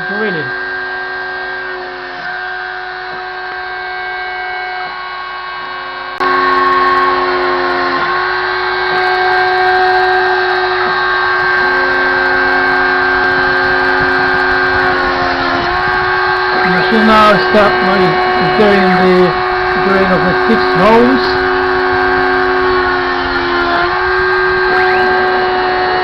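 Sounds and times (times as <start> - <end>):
spindle whining: 0.0 - 26.0
stepper motors moving: 6.2 - 26.0.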